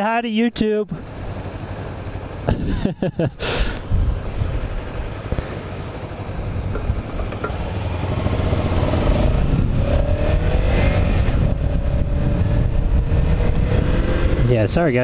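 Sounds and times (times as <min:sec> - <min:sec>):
wind rumble on microphone: 0:03.8 - 0:05.5, 0:06.4 - 0:15.0
motorcycle engine: 0:03.8 - 0:14.8.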